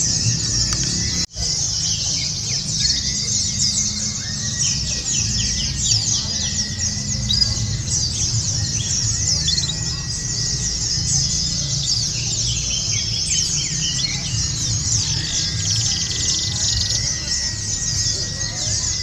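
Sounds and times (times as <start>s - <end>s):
birds twittering: 0.0s - 19.0s.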